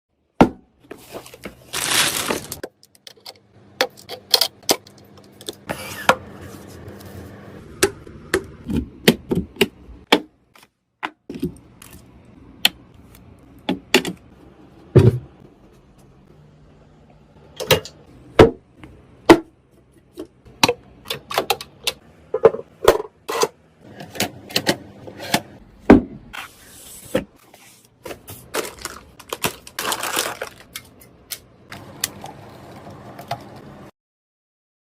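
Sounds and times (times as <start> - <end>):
rustling: 1.1 - 2.6.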